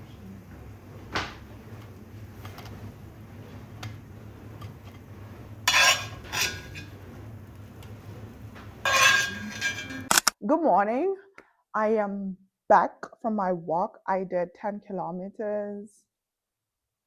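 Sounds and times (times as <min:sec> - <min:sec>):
low steady hum: 0:00.0 - 0:10.1
dishes and cutlery clinking: 0:05.7 - 0:10.1.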